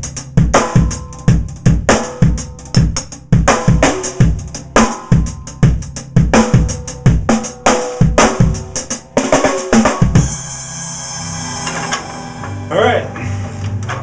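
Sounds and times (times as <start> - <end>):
kick drum: 0.0 - 7.4
cymbals: 3.5 - 13.8.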